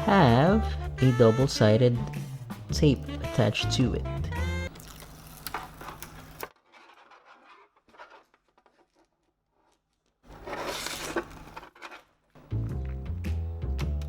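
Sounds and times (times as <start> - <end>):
background music: 0.0 - 5.4, 12.4 - 14.0
tape backing peeling off: 4.7 - 9.2, 10.3 - 11.9.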